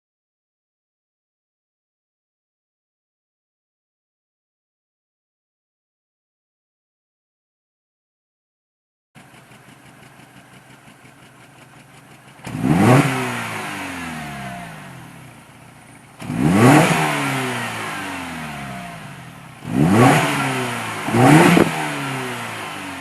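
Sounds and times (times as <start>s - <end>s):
car engine idling and revving: 9.2s - 23.0s.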